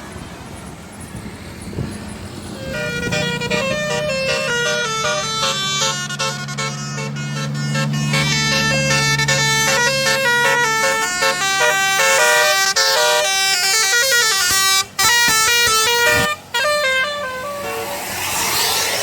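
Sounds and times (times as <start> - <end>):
multi-tone bus horn melody: 2.6 - 18.7
rushing noise: 14.8 - 19.0.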